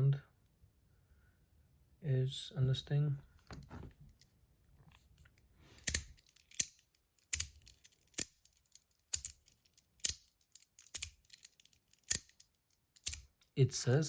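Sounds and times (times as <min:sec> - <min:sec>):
metal fidget toy clicking: 0:05.8 - 0:13.3.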